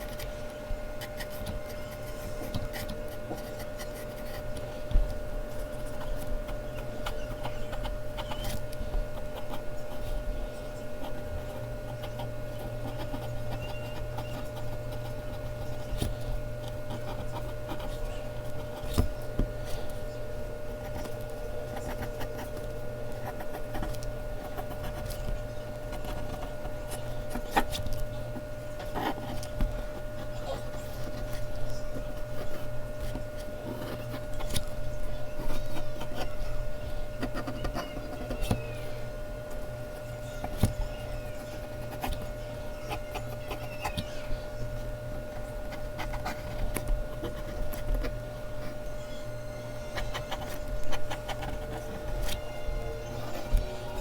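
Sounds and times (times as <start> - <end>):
steady hum: 0.0 - 54.0
pencil scratching on paper: 1.0 - 4.7, 5.5 - 10.3, 11.0 - 20.0, 20.8 - 38.8, 40.3 - 44.4, 45.3 - 48.9, 49.8 - 54.0.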